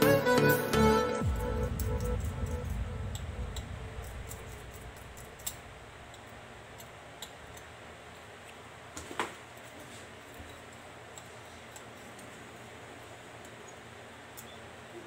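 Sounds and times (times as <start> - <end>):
background music: 0.0 - 5.7.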